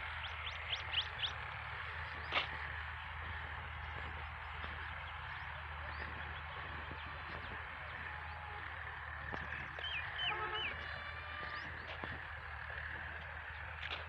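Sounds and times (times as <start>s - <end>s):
bird chirping calls: 0.1s - 2.5s, 9.4s - 12.6s
fowl honking: 9.8s - 11.7s.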